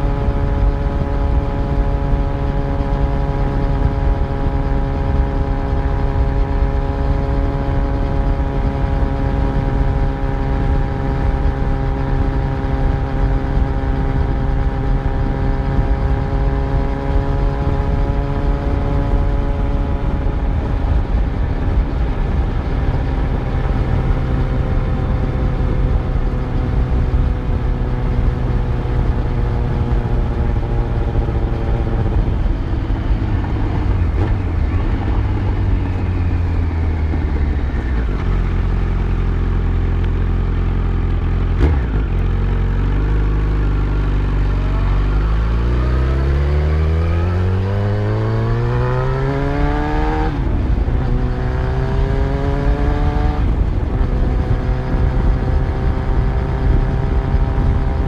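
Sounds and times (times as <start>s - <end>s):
motorcycle engine cruising: 0.0s - 58.0s
wind rumble: 0.0s - 58.0s.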